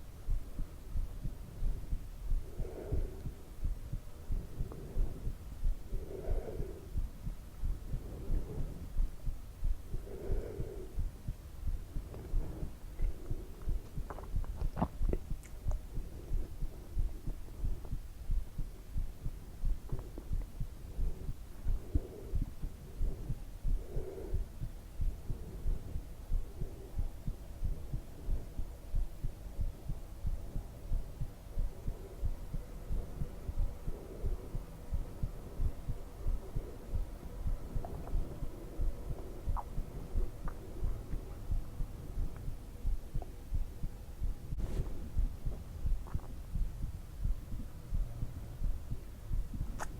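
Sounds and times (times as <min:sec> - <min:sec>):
faint steady hum: 0:00.0 - 0:49.9
heartbeat thumps: 0:00.0 - 0:49.9.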